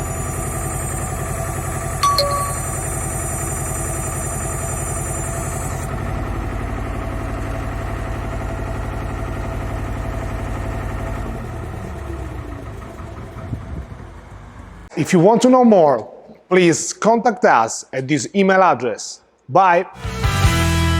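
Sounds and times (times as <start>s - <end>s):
diesel engine idling: 4.8s - 14.8s.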